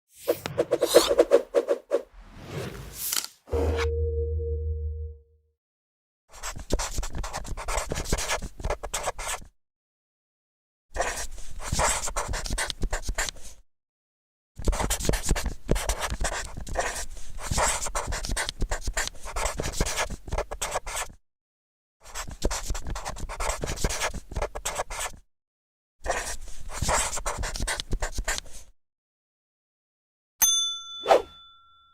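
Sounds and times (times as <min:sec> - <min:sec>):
marker pen scratching and squeaking: 0:00.2 - 0:01.9, 0:06.3 - 0:09.5, 0:11.0 - 0:13.6, 0:14.6 - 0:21.2, 0:22.0 - 0:25.2, 0:26.0 - 0:28.7.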